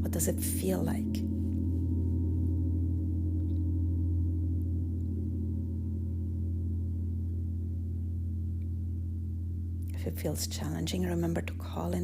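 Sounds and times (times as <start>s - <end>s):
gong shimmering: 0.8s - 9.9s.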